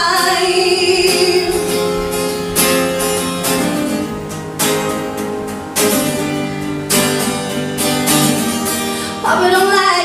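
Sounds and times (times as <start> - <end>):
acoustic guitar strummed chords: 0.0 - 10.0.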